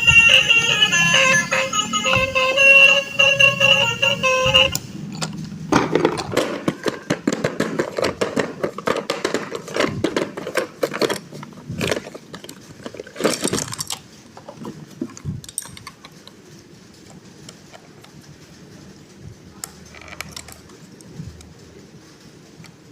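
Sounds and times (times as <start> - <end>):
plastic toys and packaging handled: 4.5 - 18.3.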